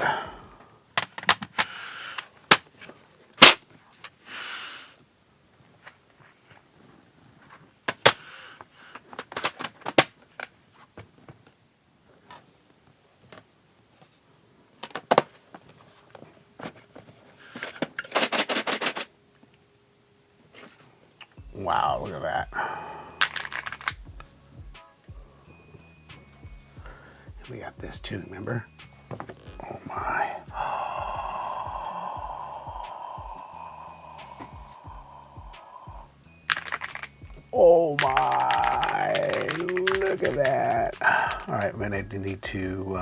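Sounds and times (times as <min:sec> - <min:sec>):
plastic parts clicking: 0:01.0 - 0:04.2, 0:07.9 - 0:10.6, 0:17.5 - 0:19.1, 0:23.2 - 0:24.1, 0:36.5 - 0:37.2, 0:37.9 - 0:41.6
rapid plastic clatter: 0:01.0 - 0:04.2, 0:07.4 - 0:11.4, 0:14.8 - 0:19.1.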